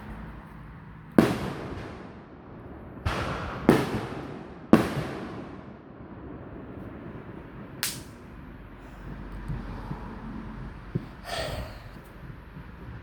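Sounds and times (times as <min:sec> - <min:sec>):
bang snaps cracking: 0:07.8 - 0:08.2.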